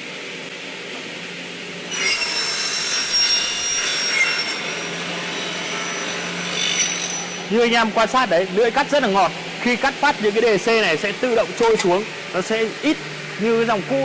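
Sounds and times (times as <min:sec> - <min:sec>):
circular saw blade humming: 0:01.8 - 0:14.0
saw cutting metal screech: 0:01.9 - 0:07.8.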